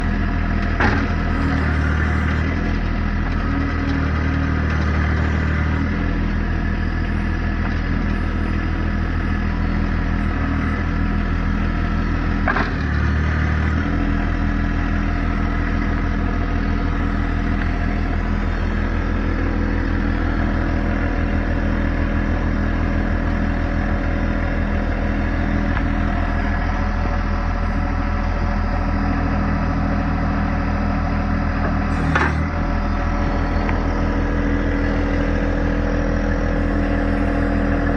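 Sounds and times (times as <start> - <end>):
tractor diesel engine running: 0.0 - 37.9.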